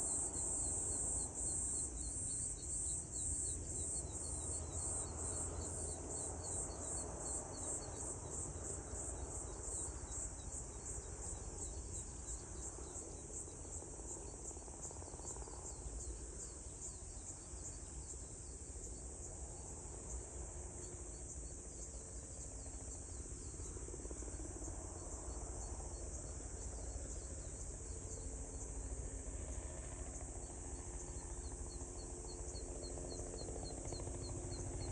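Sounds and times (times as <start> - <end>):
insects pulsing chorus: 0.0 - 18.6, 29.8 - 34.9.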